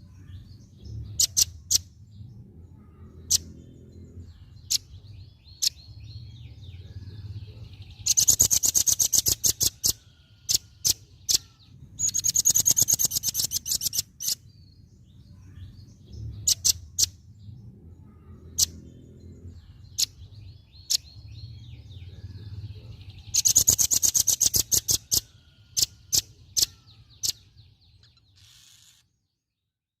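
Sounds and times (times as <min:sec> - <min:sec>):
bird rattling trills: 0:08.0 - 0:14.4, 0:23.3 - 0:27.4.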